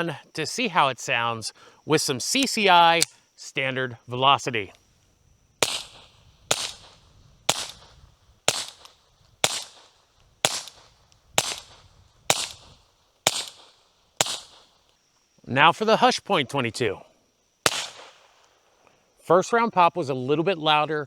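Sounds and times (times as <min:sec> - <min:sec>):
suppressed rifle shots: 0:05.6 - 0:14.8, 0:17.6 - 0:18.4.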